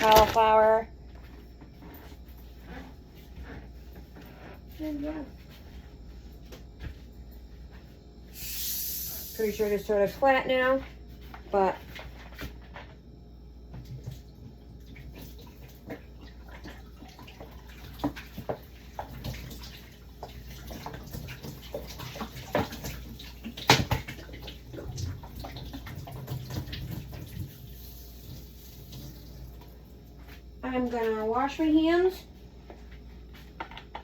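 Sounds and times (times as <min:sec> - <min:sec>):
clatter of containers and utensils: 0:00.0 - 0:00.7, 0:15.5 - 0:27.6.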